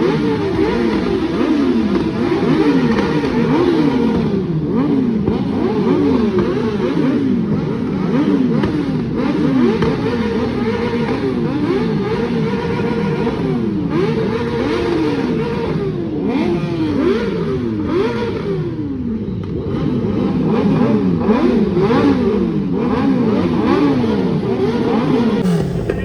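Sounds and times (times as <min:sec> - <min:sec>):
motorbike engines revving: 0:00.0 - 0:18.7.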